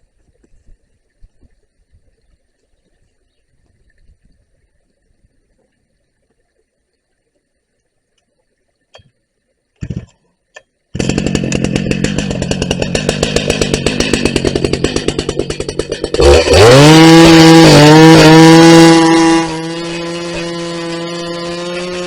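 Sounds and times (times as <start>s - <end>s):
chainsaw idling and revving: 11.0s - 22.0s.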